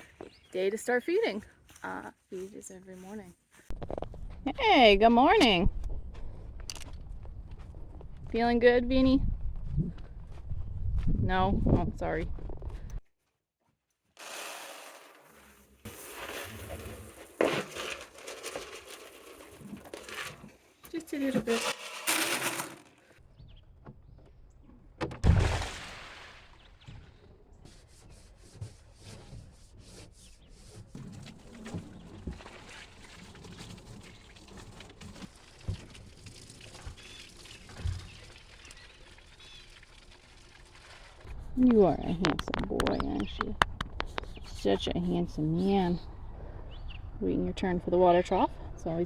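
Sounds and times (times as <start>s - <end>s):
rustling and crinkling handling: 14.8s - 23.2s.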